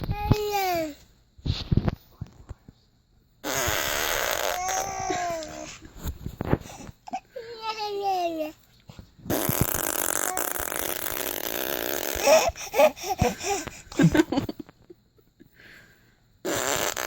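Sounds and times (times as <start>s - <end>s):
woman blowing raspberry: 3.4s - 5.4s, 9.3s - 14.2s, 16.4s - 17.0s.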